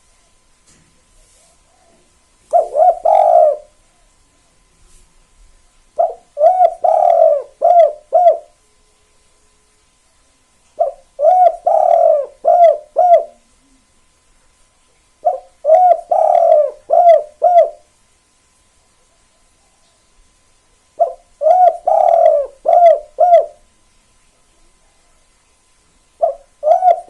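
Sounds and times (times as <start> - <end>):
dove cooing: 1.5 - 4.2, 6.0 - 8.6, 10.8 - 13.9, 15.2 - 17.9, 21.0 - 23.7, 26.2 - 27.0.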